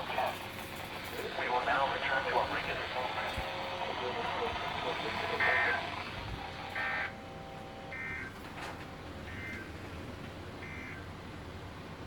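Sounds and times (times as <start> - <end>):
steady radio hiss: 0.0 - 7.1.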